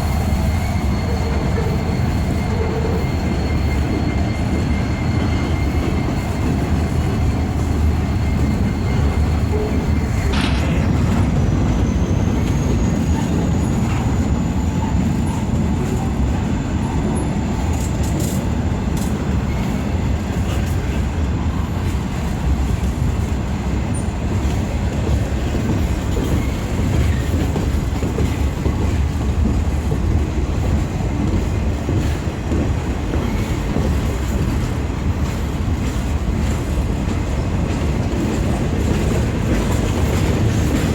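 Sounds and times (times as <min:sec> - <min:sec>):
high wheel squeal: 0:00.0 - 0:17.9
freight train rumbling past: 0:00.0 - 0:40.9.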